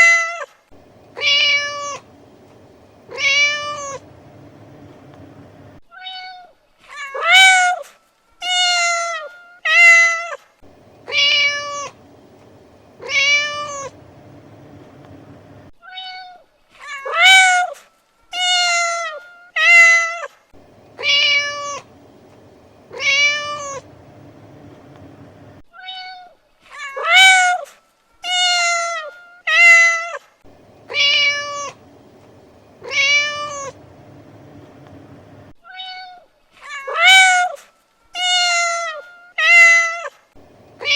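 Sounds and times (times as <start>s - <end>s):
cat meowing: 1.2s - 2.1s, 3.1s - 4.1s, 11.1s - 12.0s, 13.0s - 14.0s, 21.0s - 21.9s, 22.9s - 23.9s, 30.9s - 31.8s, 32.8s - 33.8s.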